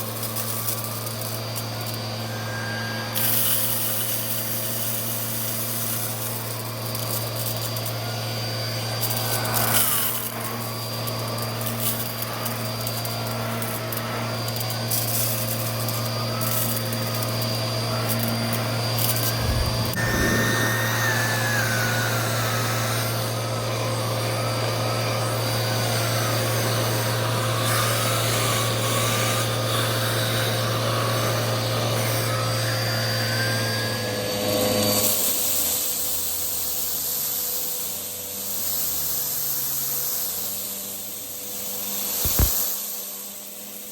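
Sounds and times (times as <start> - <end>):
vacuum cleaner running: 0.0 - 37.3, 37.9 - 43.8
wavering whistling tone: 0.3 - 4.8, 6.5 - 11.6, 17.9 - 25.8.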